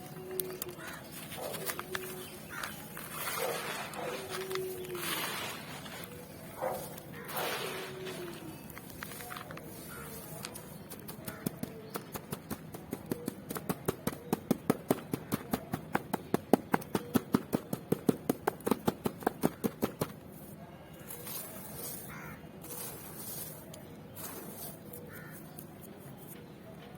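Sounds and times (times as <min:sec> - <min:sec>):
charcoal squeaky clicks: 0:00.0 - 0:03.2, 0:20.9 - 0:26.9
dusty crumbling rustles: 0:00.0 - 0:11.4.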